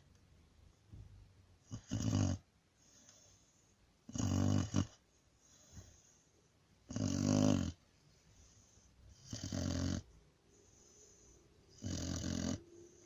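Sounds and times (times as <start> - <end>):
dog snoring: 1.6 - 2.5, 4.1 - 5.0, 6.9 - 7.8, 9.1 - 10.1, 10.7 - 13.0.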